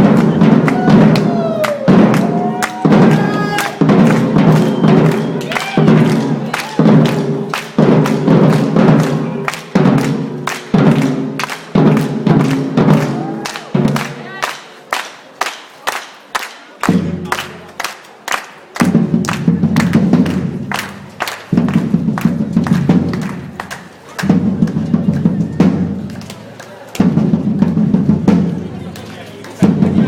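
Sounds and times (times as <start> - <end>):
heavy drum strokes: 0.0 - 14.0, 27.0 - 28.9, 29.6 - 30.0
percussion ensemble drumming: 0.0 - 14.5, 16.8 - 17.7, 18.8 - 30.0.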